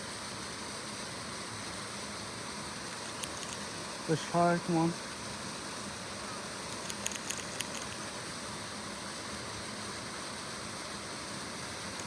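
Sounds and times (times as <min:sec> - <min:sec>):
outdoor background hiss: 0:00.0 - 0:12.0
light sharp ticks: 0:03.1 - 0:03.7, 0:06.7 - 0:08.1.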